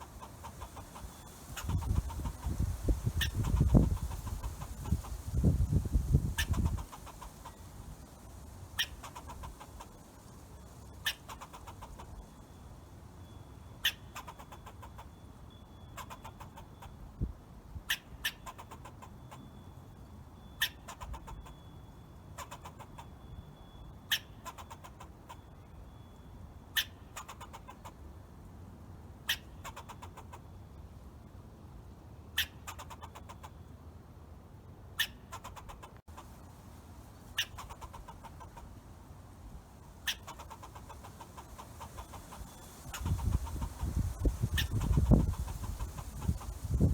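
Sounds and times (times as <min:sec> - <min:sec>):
squirrel chirping: 0:00.0 - 0:12.3, 0:13.8 - 0:15.1, 0:15.8 - 0:17.0, 0:17.9 - 0:19.0, 0:20.6 - 0:21.5, 0:24.1 - 0:25.0, 0:37.3 - 0:38.8, 0:40.0 - 0:46.9
low steady background hiss: 0:00.0 - 0:46.9.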